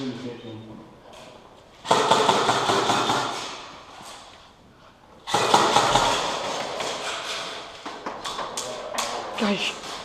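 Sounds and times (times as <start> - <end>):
rapid airsoft gunfire bursts: 1.8 - 3.6, 5.3 - 6.7.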